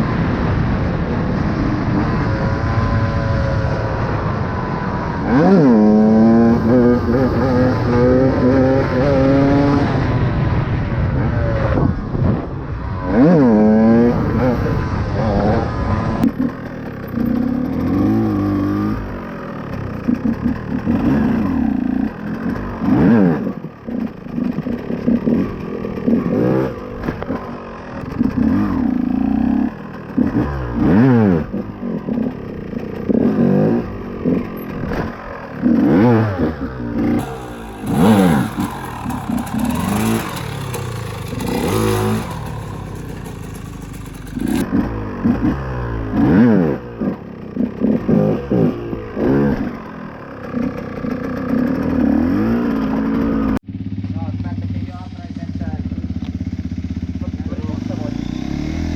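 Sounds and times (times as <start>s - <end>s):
two-stroke engine revving: 1.8s - 11.9s, 12.8s - 58.9s.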